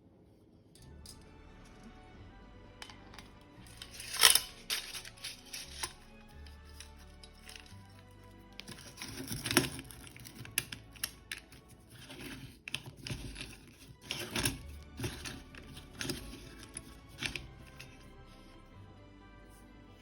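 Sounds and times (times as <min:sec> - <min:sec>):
background music: 0:00.8 - 0:20.0
small metal parts clicking: 0:02.8 - 0:06.0, 0:08.6 - 0:17.8.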